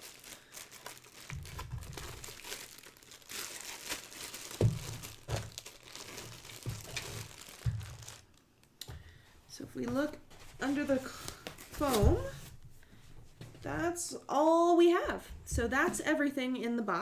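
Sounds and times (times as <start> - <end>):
cardboard packaging crinkling: 0.0 - 8.8, 9.9 - 12.6.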